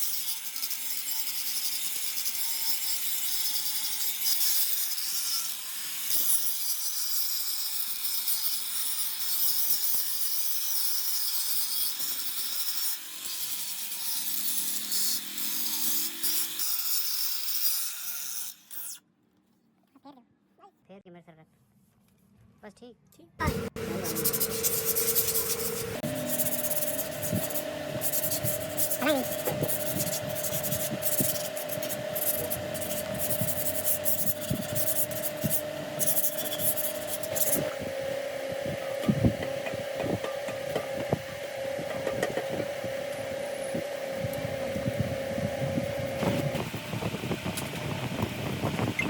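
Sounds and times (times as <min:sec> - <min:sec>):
workshop machine whining: 0:23.4 - 0:49.0
metal scraping and rubbing: 0:23.5 - 0:48.0.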